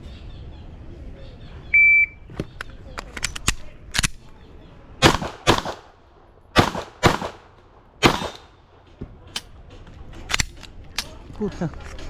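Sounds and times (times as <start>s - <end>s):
pistol shots: 5.0s - 8.8s.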